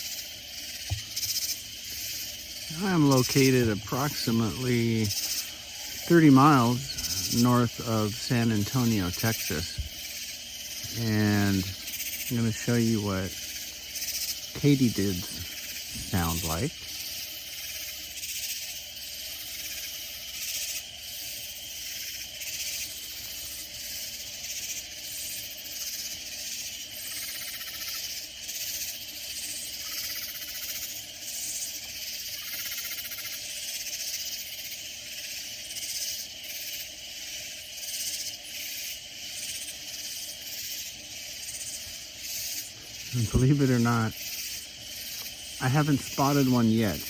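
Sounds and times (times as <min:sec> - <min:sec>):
katydids calling: 0:00.0 - 0:47.0.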